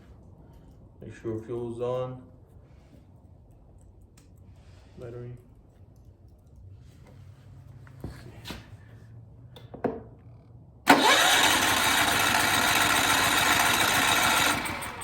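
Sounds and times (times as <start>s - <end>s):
generator engine running: 10.9s - 15.0s.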